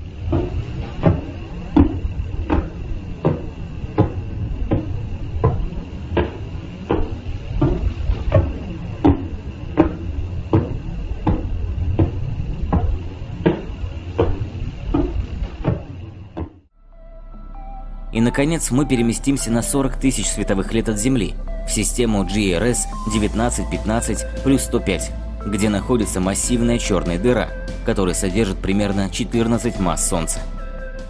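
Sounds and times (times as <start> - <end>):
faint steady whistle: 16.8 - 31.0
steady hiss and low rumble: 17.4 - 31.0.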